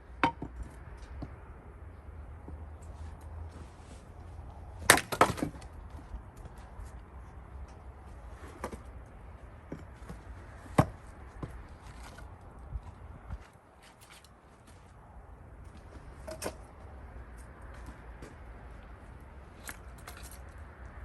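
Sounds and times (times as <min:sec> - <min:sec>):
axe striking wood: 0:04.8 - 0:05.6
wood cracking as it splits: 0:04.8 - 0:05.8.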